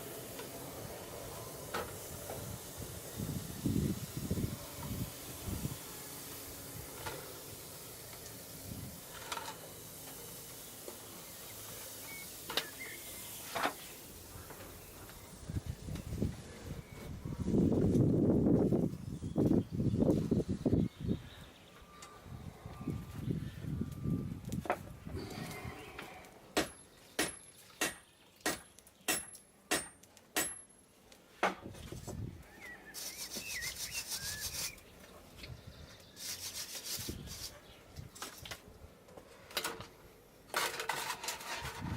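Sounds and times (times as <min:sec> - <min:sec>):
fire crackles: 0:00.0 - 0:16.4
forge fire hissing: 0:00.0 - 0:16.9, 0:32.8 - 0:35.0, 0:36.1 - 0:37.6
hammer striking steel on anvil: 0:26.6 - 0:30.8.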